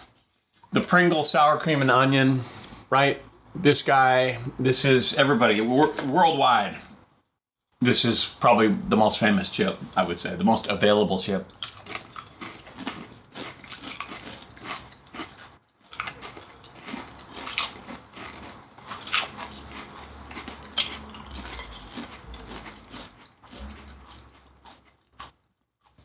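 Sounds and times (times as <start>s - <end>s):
potato chips crunching: 10.4s - 26.0s.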